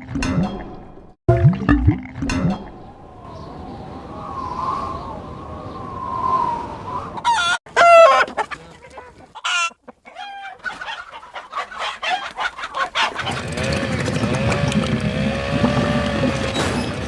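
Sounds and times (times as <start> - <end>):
cartoon chicken squawking and clucking: 7.2 - 13.5.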